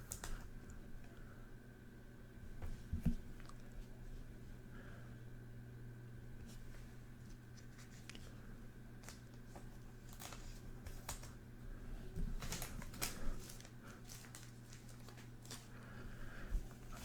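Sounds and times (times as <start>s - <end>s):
trading cards clicking and crinkling: 0.0s - 0.5s, 9.0s - 11.4s, 12.2s - 15.8s
low electrical hum: 0.0s - 17.0s.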